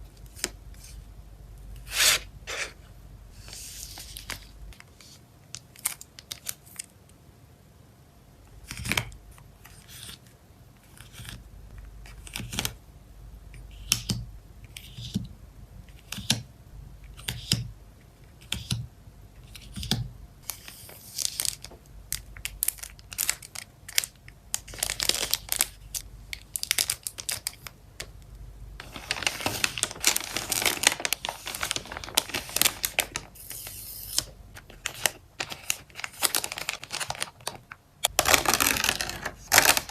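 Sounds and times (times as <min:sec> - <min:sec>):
plastic crinkling and rustling: 0:20.4 - 0:28.1, 0:28.8 - 0:39.9.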